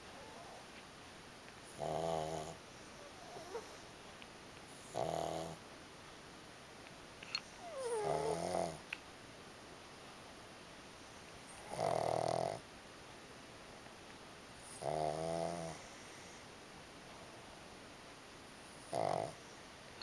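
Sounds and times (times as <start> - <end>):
dog snoring: 1.6 - 3.9, 4.8 - 5.6, 7.6 - 8.8, 11.5 - 12.6, 14.6 - 16.4, 18.7 - 19.5.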